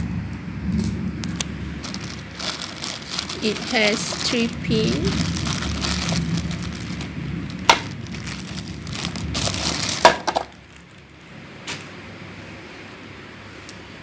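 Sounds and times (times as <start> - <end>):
plastic packaging crinkling: 1.3 - 11.9.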